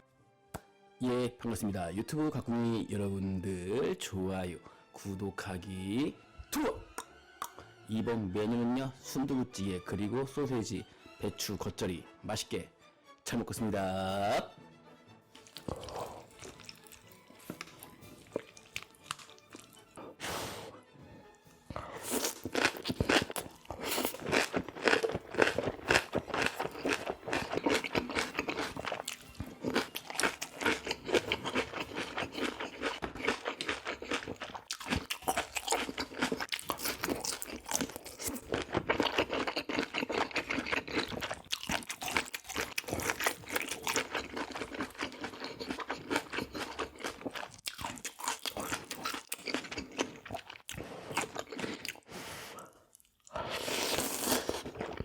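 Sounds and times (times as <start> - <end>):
person crunching and chewing food: 15.4 - 20.2, 21.7 - 55.0.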